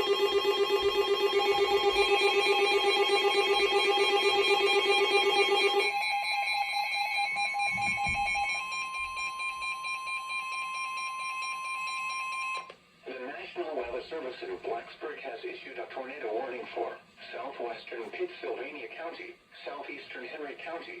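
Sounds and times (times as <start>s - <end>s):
steady attention tone: 0.0s - 11.5s
pulsing buzzy alarm: 0.0s - 12.7s.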